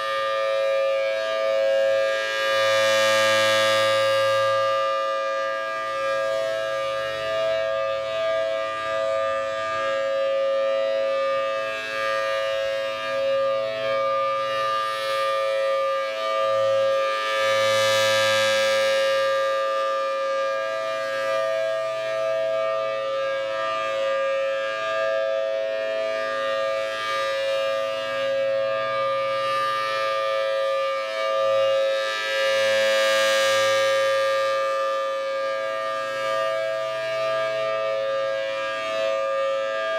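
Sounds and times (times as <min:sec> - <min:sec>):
civil defense siren steady tone: 0:00.0 - 0:39.9.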